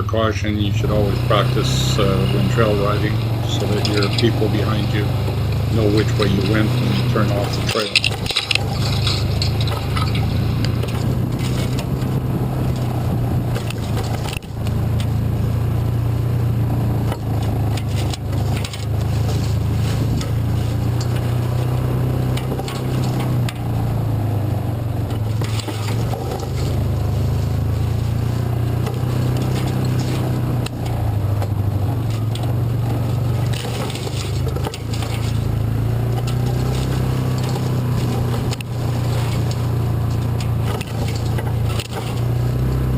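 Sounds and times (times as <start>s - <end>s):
vehicle engine droning: 0.0s - 42.9s
short knocks and scrapes: 1.8s - 12.1s, 31.4s - 42.4s.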